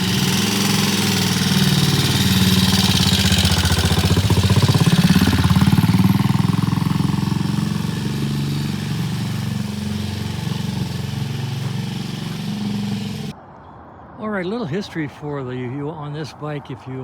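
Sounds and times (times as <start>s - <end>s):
motorcycle engine running: 0.0s - 13.3s.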